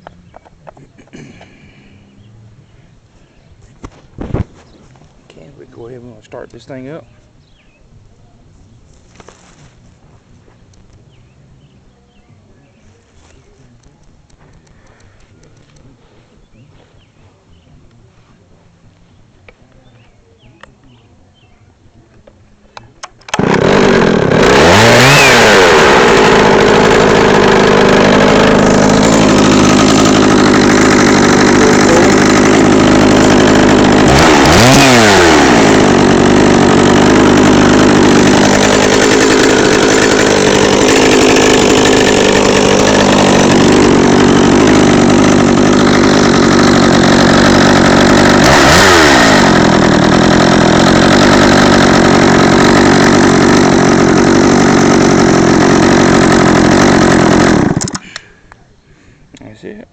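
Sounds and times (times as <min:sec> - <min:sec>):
chainsaw engine idling and revving: 0:23.0 - 0:58.4.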